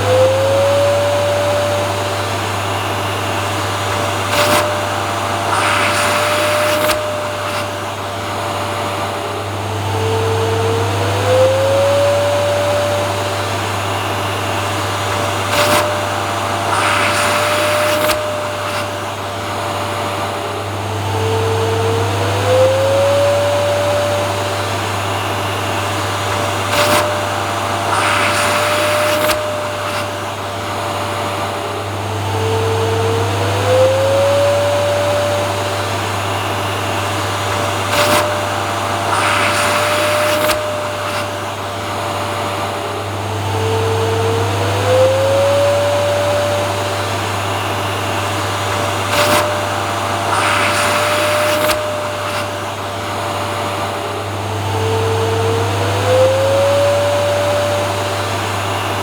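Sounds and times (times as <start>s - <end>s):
vacuum cleaner running: 0.0s - 59.0s
bursts of loud hiss: 1.9s - 9.4s, 13.1s - 20.6s, 35.5s - 43.0s, 47.0s - 54.2s.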